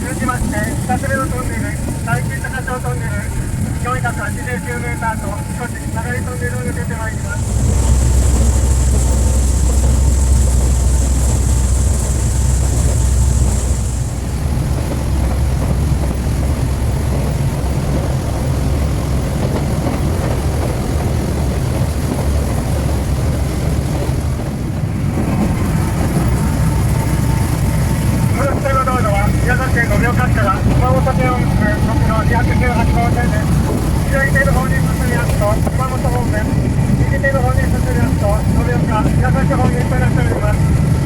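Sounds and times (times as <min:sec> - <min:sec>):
rail cart rumbling on track: 0:00.0 - 0:41.0
thin high whine: 0:04.0 - 0:15.4.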